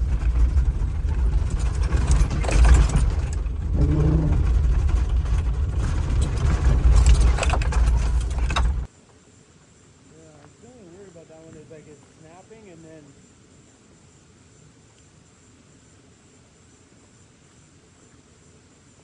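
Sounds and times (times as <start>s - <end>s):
van body rattling and knocking: 0.0s - 8.9s
van engine and road rumble: 0.0s - 8.9s.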